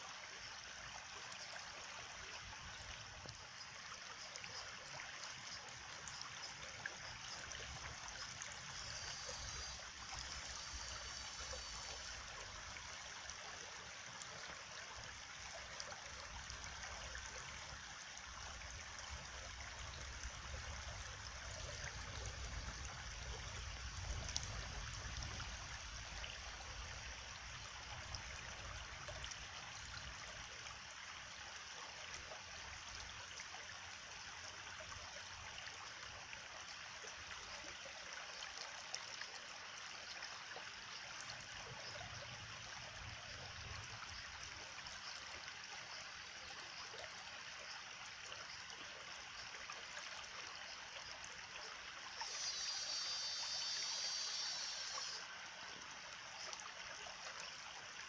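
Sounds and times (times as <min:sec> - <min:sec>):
stream water rushing: 0:49.1 - 0:58.0.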